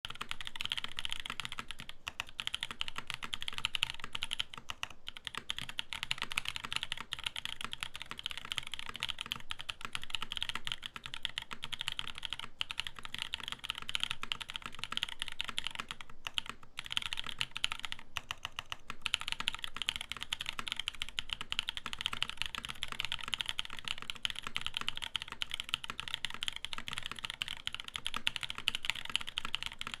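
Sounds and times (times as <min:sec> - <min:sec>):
fast mechanical keyboard typing: 0:00.1 - 0:30.0.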